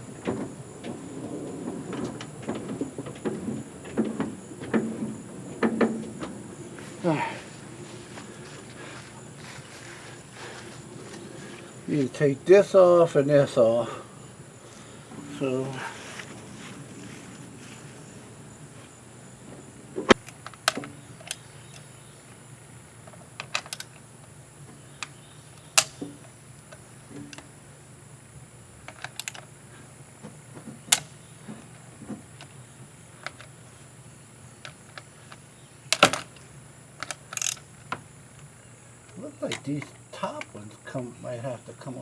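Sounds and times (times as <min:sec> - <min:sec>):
hand tools clicking and knocking: 0:20.1 - 0:21.4, 0:36.0 - 0:36.4, 0:37.0 - 0:37.6.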